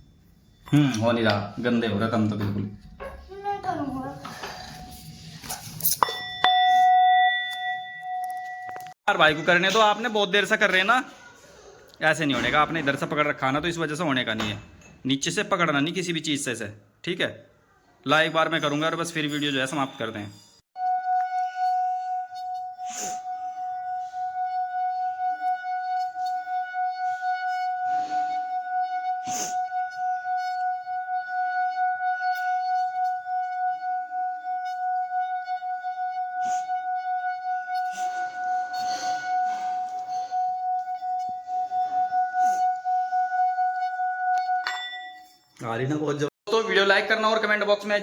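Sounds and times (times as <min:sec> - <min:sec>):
singing bowl ringing tone: 0:05.9 - 0:09.0, 0:32.0 - 0:45.5.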